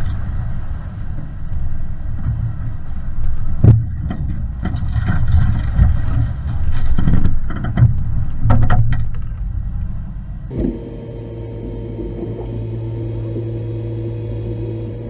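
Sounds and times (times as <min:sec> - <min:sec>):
vehicle rumbling off-road: 0:07.6 - 0:15.0.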